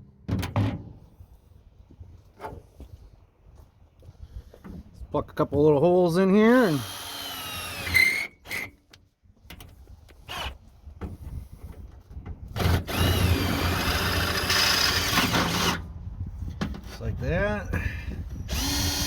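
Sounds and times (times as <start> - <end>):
power drill drilling: 6.7 - 8.7, 12.6 - 15.8, 18.5 - 19.0.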